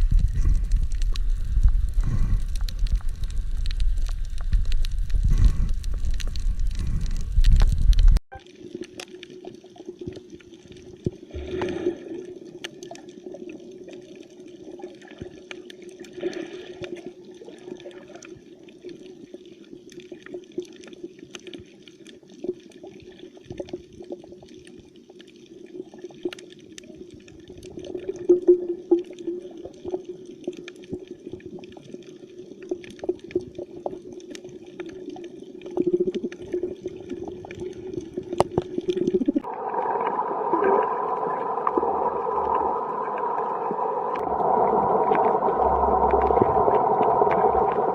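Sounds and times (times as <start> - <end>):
loud rumble: 44.2 - 47.9.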